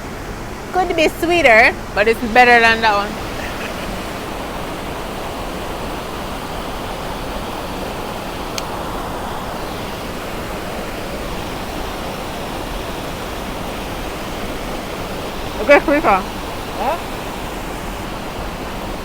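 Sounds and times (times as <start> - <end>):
running water rushing: 0.0 - 19.0.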